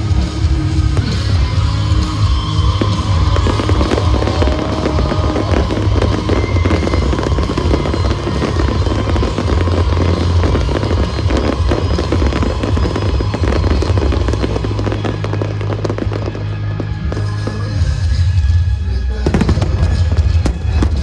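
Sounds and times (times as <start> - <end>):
bass-heavy show music: 0.0 - 21.0
fireworks crackling and booming: 0.0 - 21.0.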